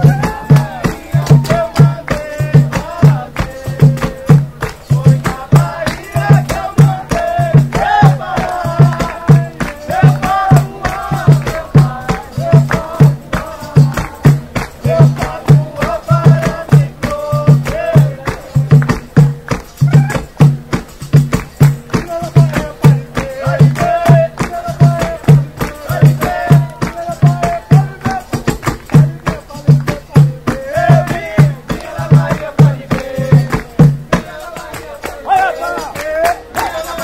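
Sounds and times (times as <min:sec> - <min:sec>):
low drum beat: 0:00.0 - 0:34.8
shakers and hand percussion: 0:00.0 - 0:37.0.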